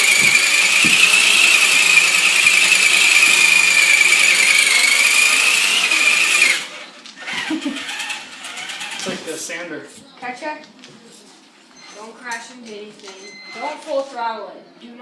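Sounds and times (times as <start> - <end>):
rc car electric motor whining: 0.0 - 9.4.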